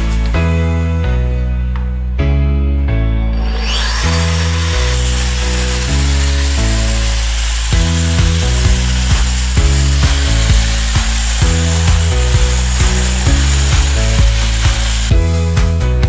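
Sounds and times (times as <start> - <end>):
angle grinder whine: 3.4 - 15.1
background music with beat: 7.7 - 16.0.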